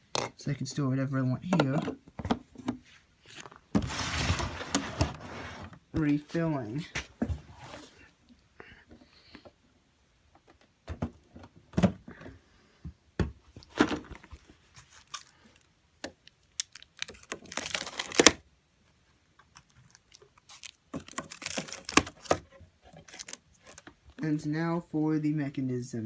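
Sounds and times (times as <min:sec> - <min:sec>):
plastic parts clicking and knocking: 0:01.4 - 0:02.8, 0:20.9 - 0:24.2
rattling rustle: 0:03.8 - 0:05.8.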